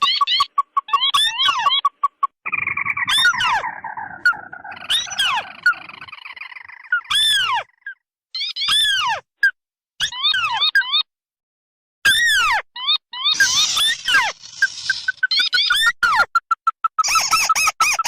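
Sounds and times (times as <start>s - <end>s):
crake calls with falling notes: 0.0s - 8.7s, 12.8s - 18.0s.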